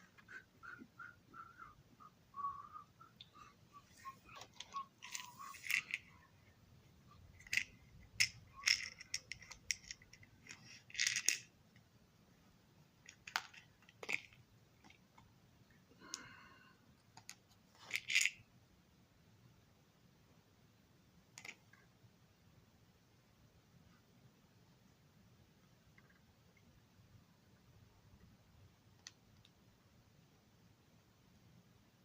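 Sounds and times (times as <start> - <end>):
small parts clicking and rattling: 3.2 - 6.3, 7.1 - 11.6, 13.0 - 15.2, 17.1 - 18.4, 21.4 - 21.8.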